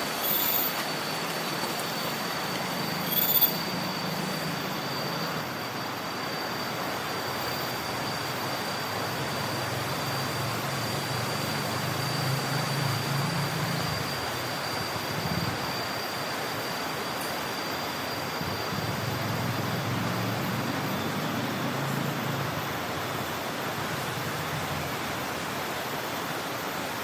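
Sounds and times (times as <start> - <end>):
rustle of dry leaves: 0.0 - 4.6
cicadas droning: 0.0 - 27.0.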